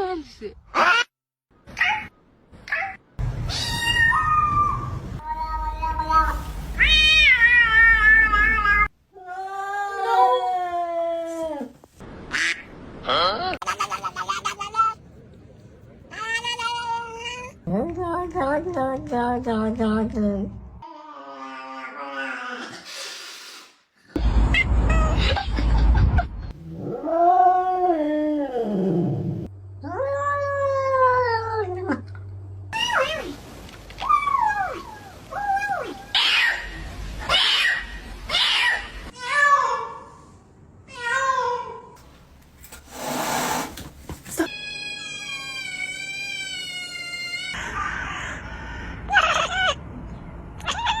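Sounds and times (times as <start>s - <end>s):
cat meowing: 3.5s - 8.9s, 44.5s - 47.6s
cat yowling: 3.5s - 8.9s, 44.5s - 48.3s.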